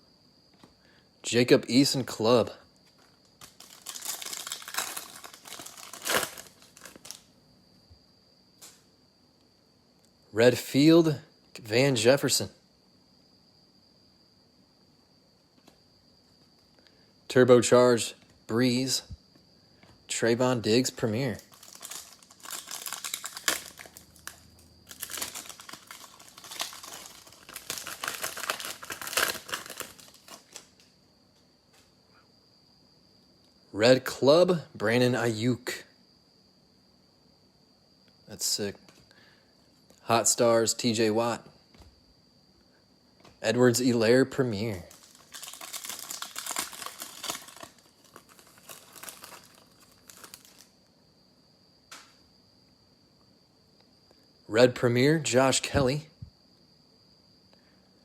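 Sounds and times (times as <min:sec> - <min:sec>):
foil wrapper crinkling: 0:02.9 - 0:07.3, 0:21.2 - 0:30.9, 0:44.7 - 0:50.8.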